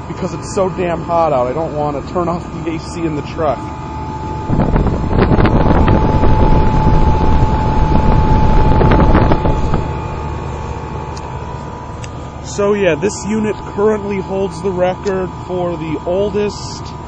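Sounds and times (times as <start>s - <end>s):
air conditioner unit humming: 0.0s - 17.0s
wind buffeting microphone: 0.1s - 11.5s.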